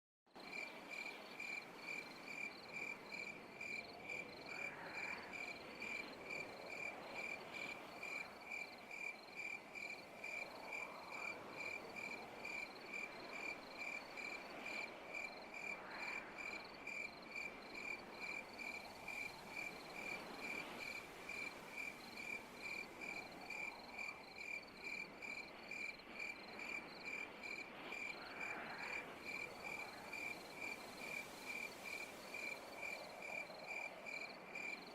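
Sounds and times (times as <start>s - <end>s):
cricket chirping: 0.4s - 34.9s
night insects hissing: 0.4s - 34.9s.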